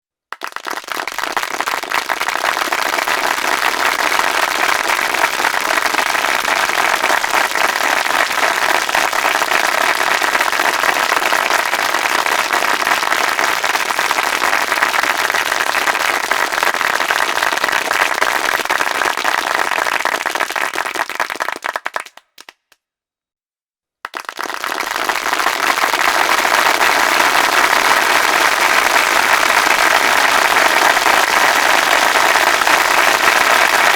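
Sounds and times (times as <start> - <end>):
large audience applauding: 0.3 - 22.7, 24.1 - 33.9.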